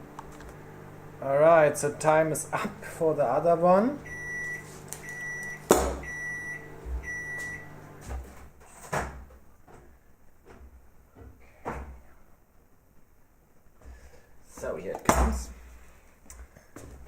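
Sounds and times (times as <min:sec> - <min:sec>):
microwave oven humming: 0:00.0 - 0:08.5
microwave high beeps: 0:04.0 - 0:08.1.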